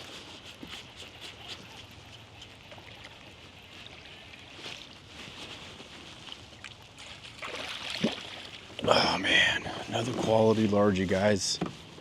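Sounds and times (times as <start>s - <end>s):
water splashing: 6.5s - 9.3s.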